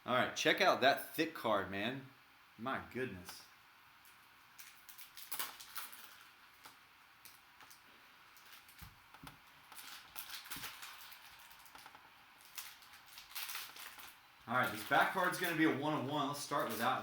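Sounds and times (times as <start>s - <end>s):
trading cards rustling: 9.6s - 17.0s.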